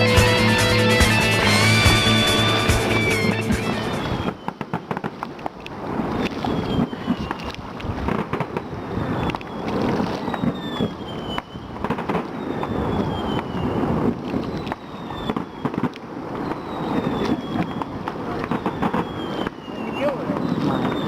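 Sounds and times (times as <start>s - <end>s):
firework whistles falling in pitch: 1.3s - 5.0s, 6.2s - 7.4s, 8.5s - 21.0s
fireworks bangs and booms: 4.0s - 7.2s, 8.0s - 9.3s, 10.3s - 21.0s.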